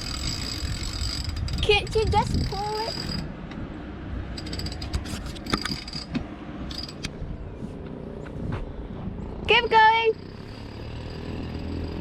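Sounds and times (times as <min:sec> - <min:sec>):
winch ratcheting clicks: 0:04.3 - 0:07.2.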